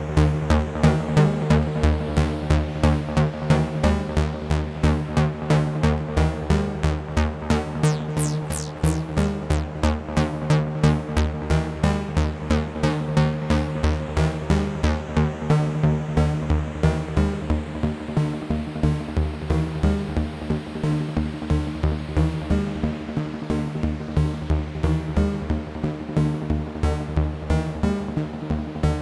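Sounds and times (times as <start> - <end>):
high-pitched synth swoops: 7.8 - 9.3
repeating synth notes: 7.8 - 9.3
low synth drone: 7.8 - 9.4.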